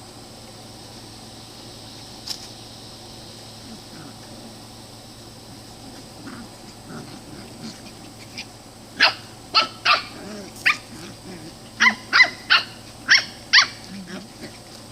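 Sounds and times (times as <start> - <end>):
puppies growling: 3.5 - 14.9
puppies yipping: 5.5 - 14.9.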